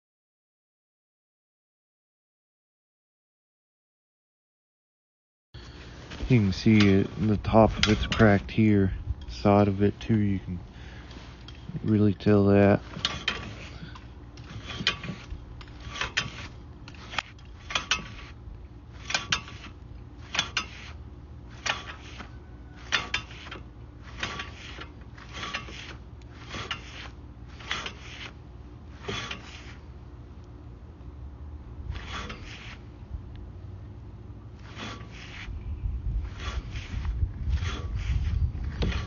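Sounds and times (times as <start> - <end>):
steady low hum: 5.6 - 39.0
cable scraping through pipe: 5.9 - 8.8, 12.7 - 29.9, 31.9 - 32.9, 34.5 - 39.0.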